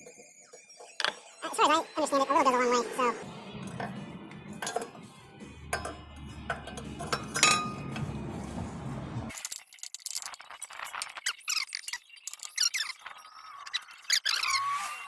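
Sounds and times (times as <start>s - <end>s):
low hum: 3.2s - 9.3s
metallic clinks of tools: 4.6s - 5.1s, 5.7s - 8.4s.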